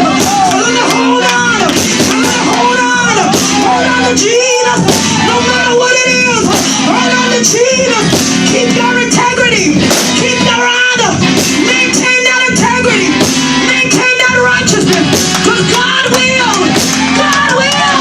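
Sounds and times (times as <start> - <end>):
drum hits: 0.0 - 4.0, 4.8 - 5.5, 6.4 - 7.0, 8.1 - 8.7, 9.8 - 10.4, 11.2 - 11.8, 14.9 - 18.0
live church band music: 0.0 - 18.0
voices singing: 0.0 - 18.0.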